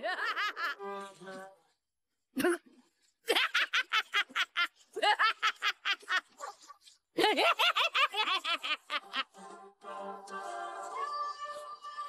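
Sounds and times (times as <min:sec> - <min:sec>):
high-pitched laughing: 0:03.3 - 0:09.4.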